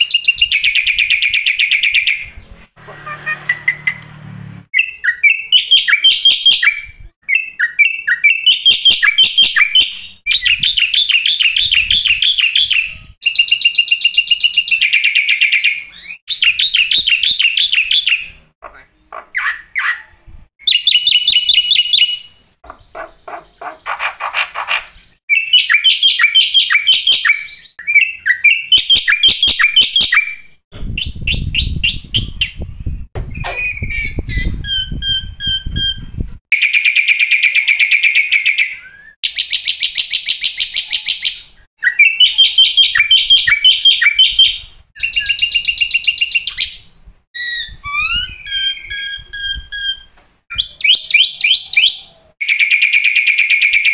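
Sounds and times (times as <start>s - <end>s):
bird singing chirps and trills: 4.8s - 30.4s, 31.0s - 39.7s, 40.4s - 53.9s
bird rough rattling call: 22.7s - 25.0s.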